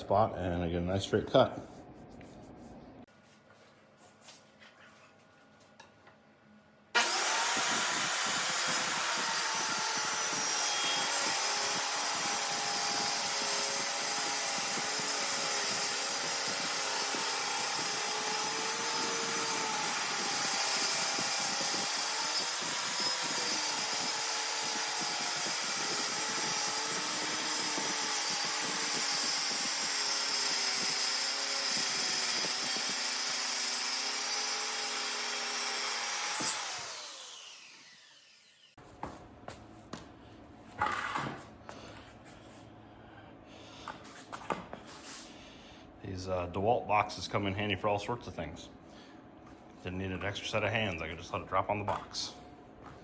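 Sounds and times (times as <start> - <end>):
circular saw cutting wood: 7.0 - 38.8.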